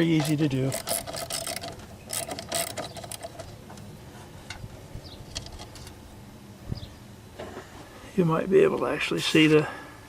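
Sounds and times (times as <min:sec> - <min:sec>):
socket ratchet clicking: 0:00.2 - 0:03.5.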